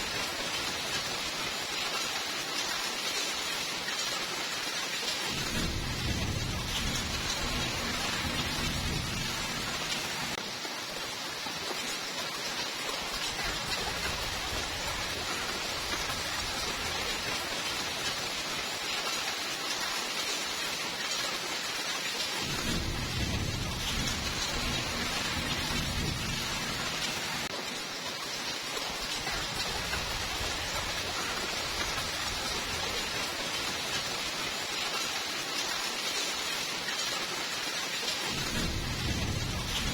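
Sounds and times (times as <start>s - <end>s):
steady rainfall: 0.0s - 39.9s
low rolling thunder: 5.3s - 10.4s, 22.4s - 27.5s, 38.3s - 39.9s.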